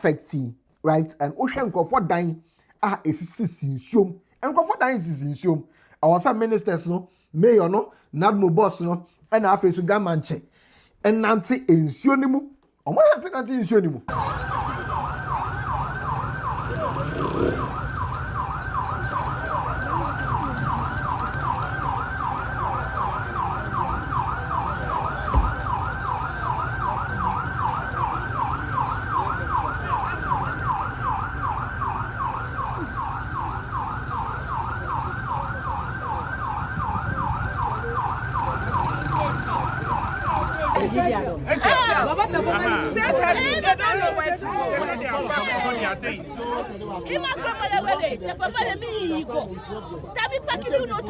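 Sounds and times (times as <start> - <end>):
vehicle and road rumble: 14.1 - 42.4
siren fast yelp: 14.1 - 45.6.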